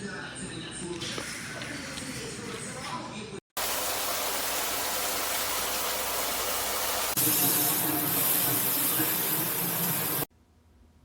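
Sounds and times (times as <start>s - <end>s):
shower spraying water: 3.6s - 10.3s.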